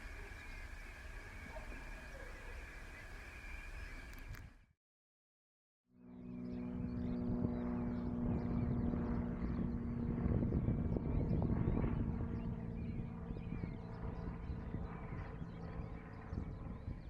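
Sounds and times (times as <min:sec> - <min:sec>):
engine humming: 0:00.0 - 0:04.5
birds chirping: 0:00.0 - 0:04.7, 0:06.1 - 0:17.0.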